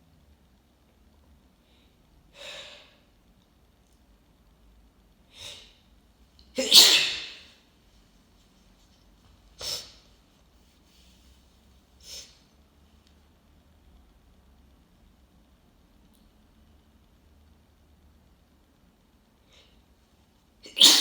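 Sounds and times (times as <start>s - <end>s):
person sneezing: 6.6s - 7.5s, 9.6s - 10.0s, 20.6s - 21.0s.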